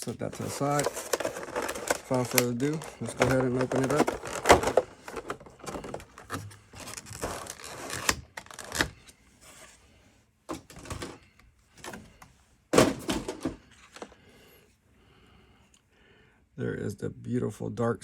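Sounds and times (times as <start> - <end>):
cardboard scrapes and rustles: 0.0 - 8.8.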